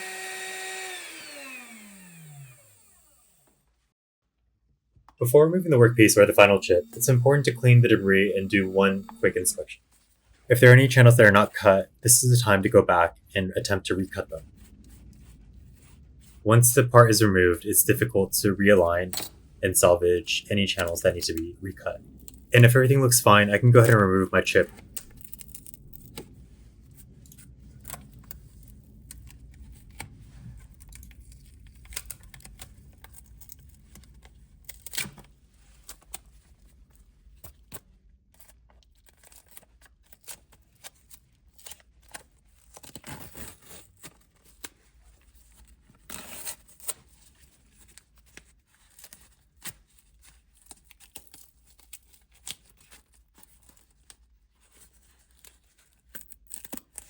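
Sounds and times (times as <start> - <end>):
low machine hum: 5.2 - 9.8.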